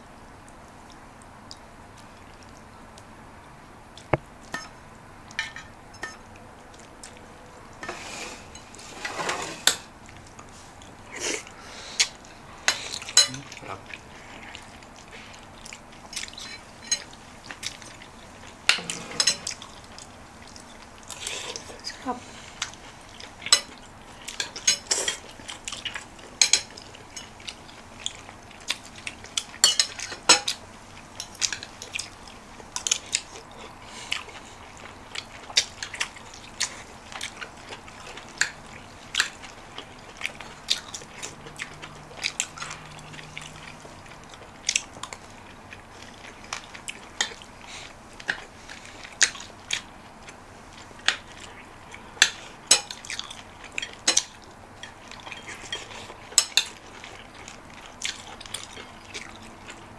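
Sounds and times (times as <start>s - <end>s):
chewing and biting: 31.2s - 59.9s.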